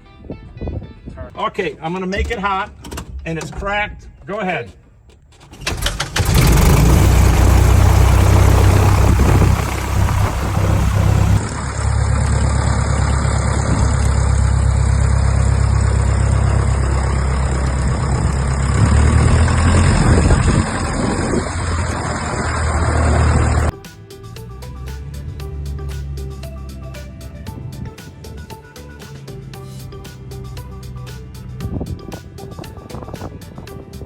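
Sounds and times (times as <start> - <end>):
light aircraft piston engine: 5.9 - 18.8.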